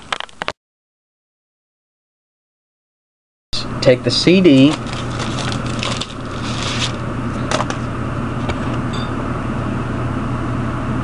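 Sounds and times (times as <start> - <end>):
steady low hum: 3.6 - 11.0
packaging rustling: 4.4 - 8.7.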